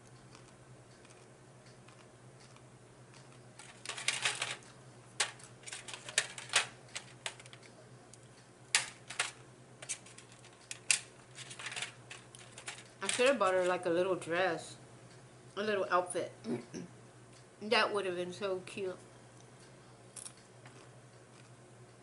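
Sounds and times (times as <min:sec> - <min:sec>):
chewing with crackles: 0:00.0 - 0:03.8, 0:19.3 - 0:22.0.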